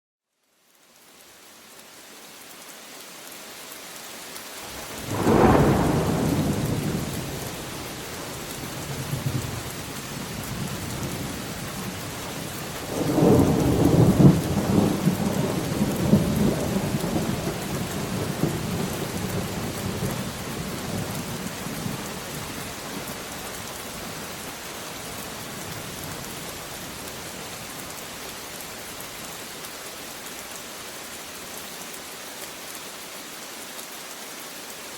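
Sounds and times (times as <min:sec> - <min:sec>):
steady rain: 0:00.3 - 0:34.9
thunder rumbling: 0:04.8 - 0:22.5.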